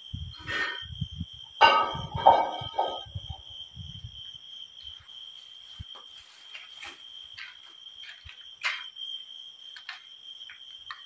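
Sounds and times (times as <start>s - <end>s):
crickets droning: 0.0s - 11.0s
soft rustles and clicks: 5.0s - 8.9s.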